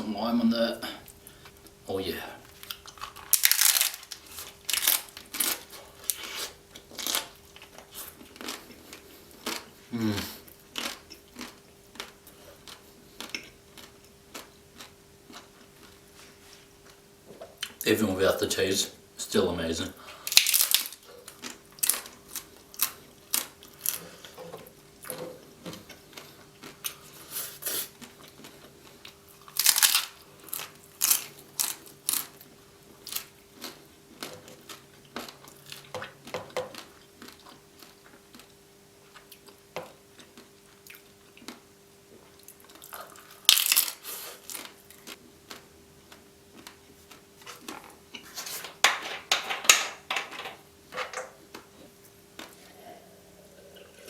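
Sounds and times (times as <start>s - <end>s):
crunching of taco shell: 2.6s - 9.7s, 20.3s - 24.1s, 29.4s - 39.6s, 42.3s - 48.4s.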